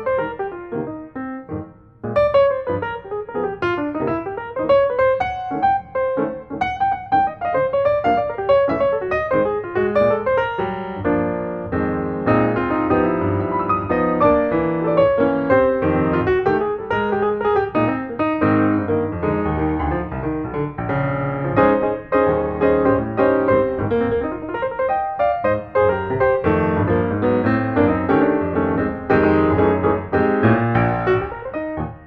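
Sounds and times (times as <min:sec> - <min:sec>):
piano music: 0:00.0 - 0:32.0.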